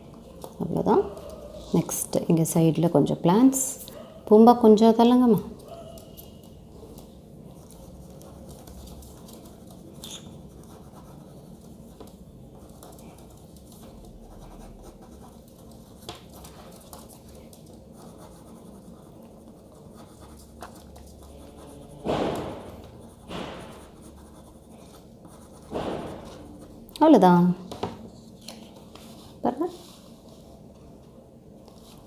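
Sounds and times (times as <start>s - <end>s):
pen scratching on paper: 12.7s - 17.3s, 17.9s - 26.6s.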